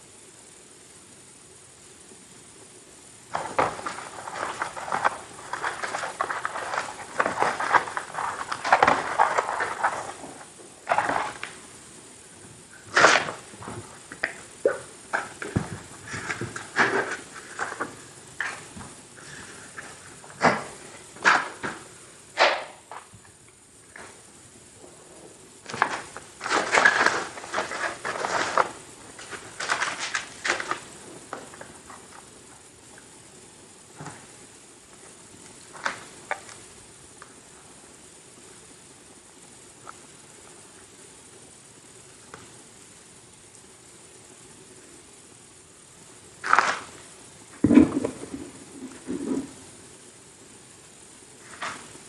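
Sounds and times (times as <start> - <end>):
cookies crunching and chewing: 3.4 - 11.6.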